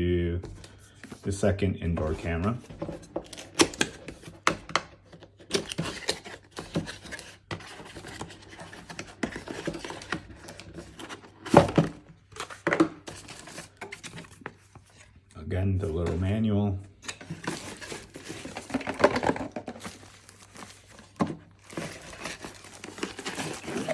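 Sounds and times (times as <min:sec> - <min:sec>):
packaging rustling and crinkling: 0:02.0 - 0:15.2, 0:17.0 - 0:23.9
box clicks and knocks: 0:17.2 - 0:20.0.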